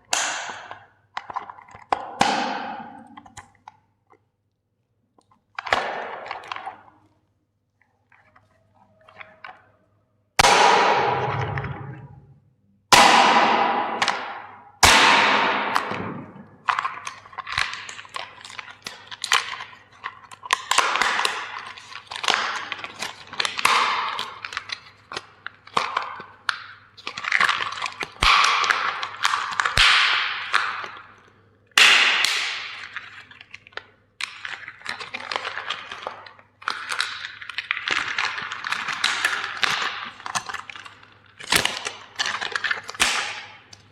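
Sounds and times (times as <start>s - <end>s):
plastic cracking and crunching: 5.2s - 7.2s, 12.9s - 43.9s.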